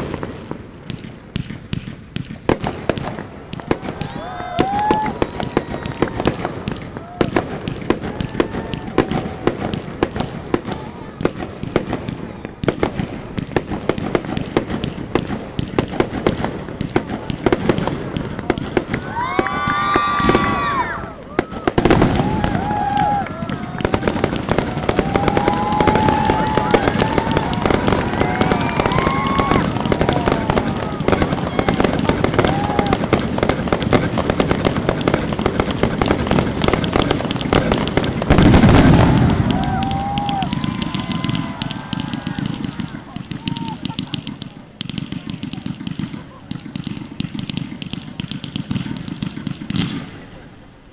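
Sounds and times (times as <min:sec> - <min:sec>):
fireworks bangs and crackles: 0:00.0 - 0:50.9.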